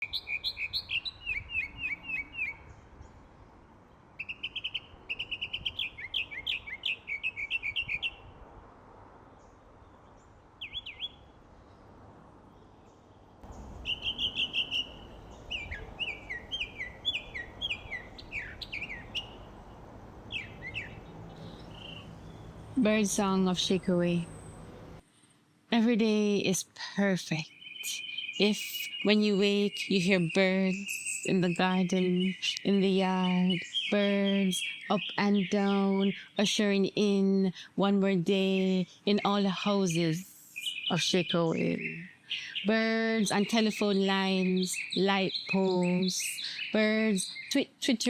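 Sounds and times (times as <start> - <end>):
songbird singing whistled notes: 0.0 - 2.8, 4.2 - 8.3, 10.6 - 11.3, 13.4 - 19.5, 20.3 - 24.6, 27.4 - 36.2, 40.5 - 47.7.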